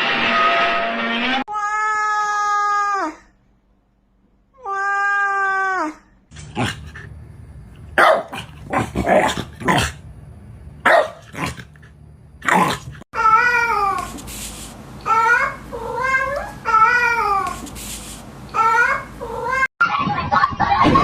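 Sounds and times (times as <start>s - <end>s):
cat meowing: 15.1s - 17.6s.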